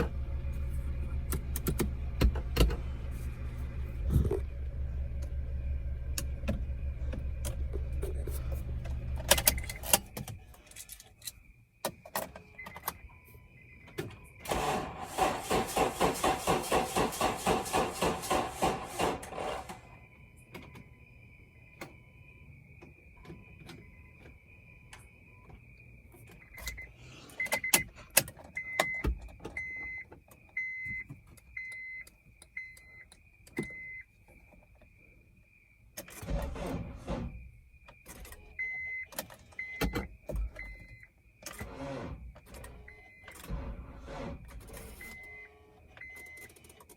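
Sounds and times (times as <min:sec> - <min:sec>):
dashboard warning chime beeping: 0:07.9 - 0:10.4, 0:19.9 - 0:34.1, 0:38.0 - 0:41.1, 0:42.4 - 0:43.6, 0:44.8 - 0:46.6
starter cranking engine: 0:14.4 - 0:19.8.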